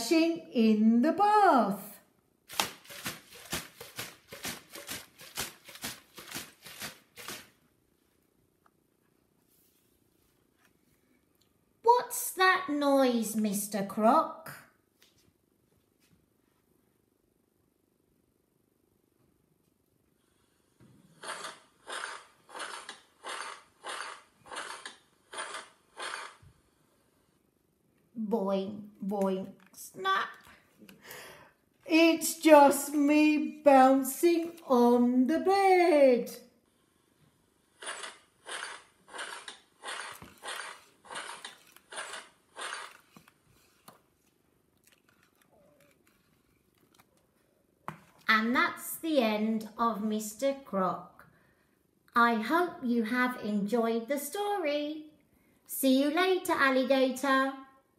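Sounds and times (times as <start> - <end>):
bed springs creaking: 21.2 - 26.4, 37.8 - 43.8.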